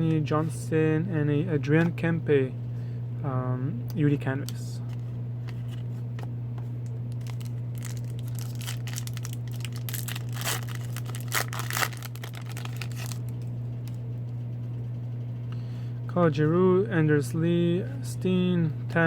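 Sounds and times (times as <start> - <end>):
steady low hum: 0.0 - 19.0
wrapper tearing and crinkling: 7.1 - 14.0.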